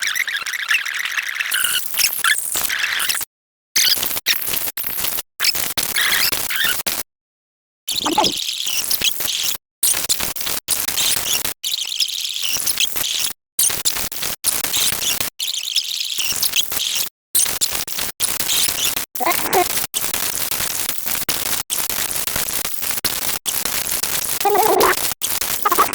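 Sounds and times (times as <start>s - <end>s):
high-pitched squeaky sound effects: 8.0s - 8.3s, 19.2s - 19.6s, 24.4s - 25.0s, 25.7s - 25.9s.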